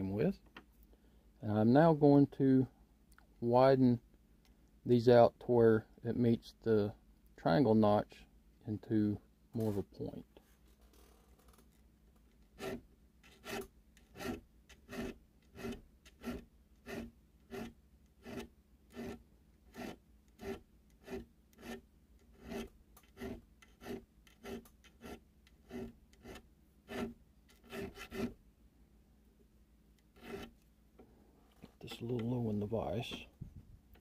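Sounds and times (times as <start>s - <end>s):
needle file rasping on metal: 12.5s - 28.4s, 30.1s - 30.6s.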